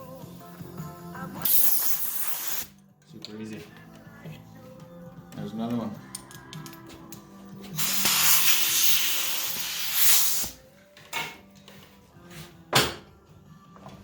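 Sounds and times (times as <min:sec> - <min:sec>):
compressed air hissing into tire: 0:01.5 - 0:02.7, 0:07.8 - 0:10.6.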